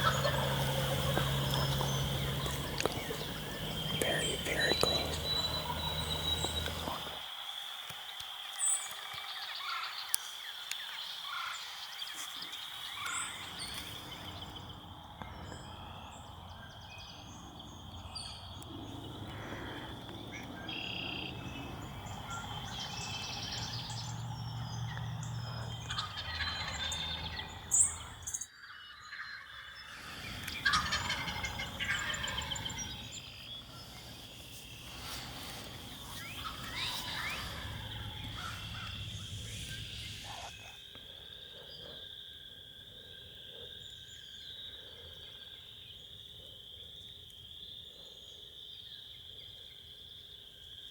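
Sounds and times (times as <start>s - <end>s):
turkey gobbling: 0.0s - 7.2s, 25.6s - 28.2s, 30.1s - 33.1s, 36.0s - 40.7s
songbirds chirping: 0.0s - 50.9s.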